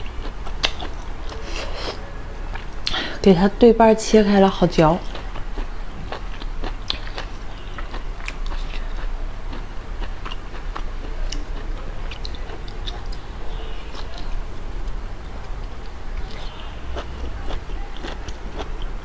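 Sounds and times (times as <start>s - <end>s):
person chewing food: 0.0s - 3.0s, 5.0s - 19.0s
steady low hum: 0.0s - 19.0s
mouth clicks and smacks: 2.6s - 3.0s, 5.0s - 9.1s.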